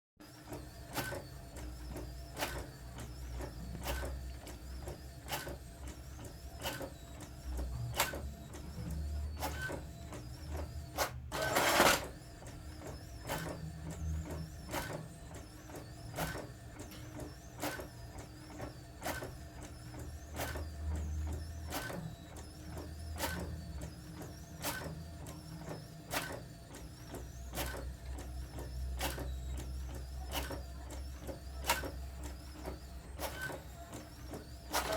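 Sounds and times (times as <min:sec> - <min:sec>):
inkjet printer printing: 0:00.2 - 0:34.9
printer clicking: 0:11.0 - 0:12.1, 0:34.3 - 0:34.9
burst of printer noise: 0:11.0 - 0:12.2, 0:31.5 - 0:34.9.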